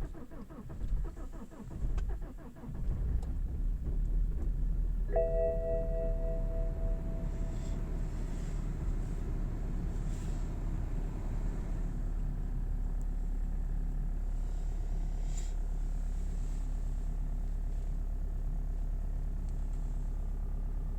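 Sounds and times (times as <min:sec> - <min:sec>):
diesel car engine idling: 0:00.0 - 0:20.9.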